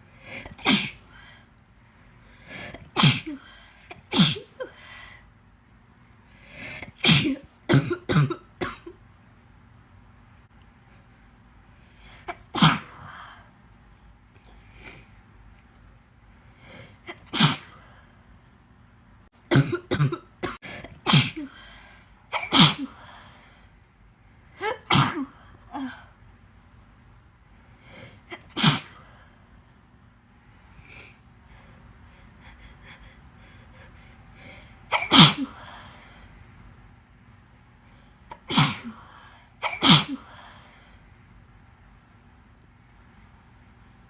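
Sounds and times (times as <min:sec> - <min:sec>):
woman sneezing: 0:00.4 - 0:01.1, 0:17.1 - 0:17.8, 0:21.0 - 0:21.6, 0:22.4 - 0:23.0, 0:24.6 - 0:26.0, 0:28.3 - 0:29.0, 0:34.9 - 0:35.7, 0:38.4 - 0:39.0, 0:39.6 - 0:40.3.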